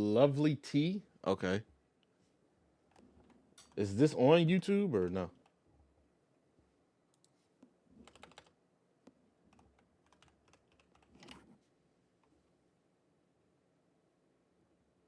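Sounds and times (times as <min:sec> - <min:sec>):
keyboard typing clicks: 0:08.0 - 0:08.5, 0:09.5 - 0:11.4.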